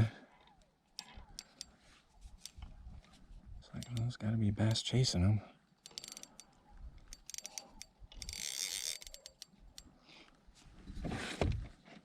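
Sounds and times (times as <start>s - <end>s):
fishing reel clicking: 1.0s - 1.8s, 3.7s - 4.9s, 5.8s - 9.9s.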